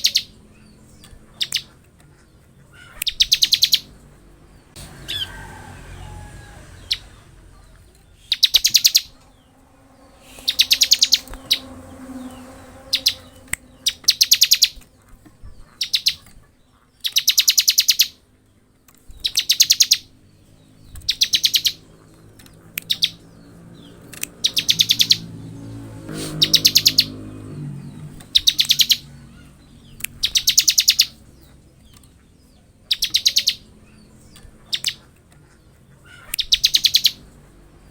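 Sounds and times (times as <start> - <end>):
bird buzzing trill: 8.4 - 14.8.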